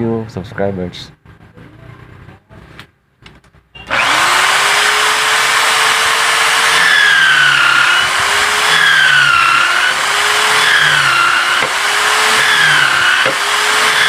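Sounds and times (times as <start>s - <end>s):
electric drill motor whine: 3.8s - 14.0s.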